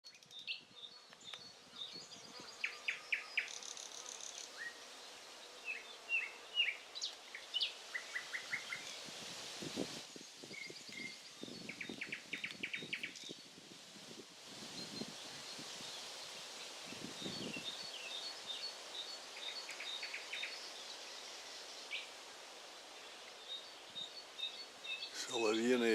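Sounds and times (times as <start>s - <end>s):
nightingale singing: 10.2s - 13.5s.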